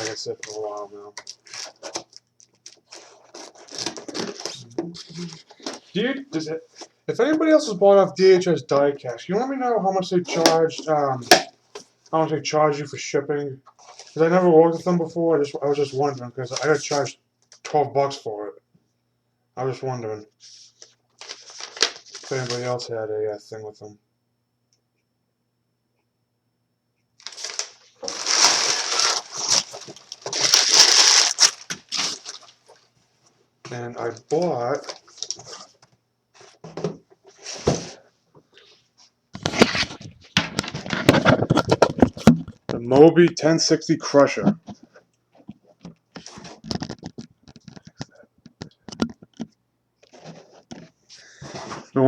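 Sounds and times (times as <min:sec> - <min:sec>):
packaging crumpling and tearing: 0:00.0 - 0:06.0, 0:21.2 - 0:22.8, 0:27.2 - 0:32.8, 0:34.7 - 0:35.7.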